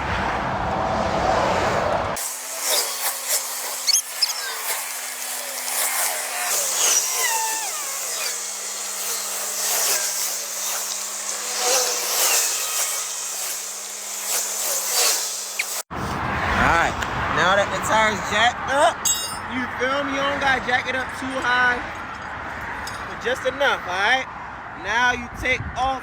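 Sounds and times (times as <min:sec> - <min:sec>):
car jack squeaks and clicks: 0:03.8 - 0:08.3.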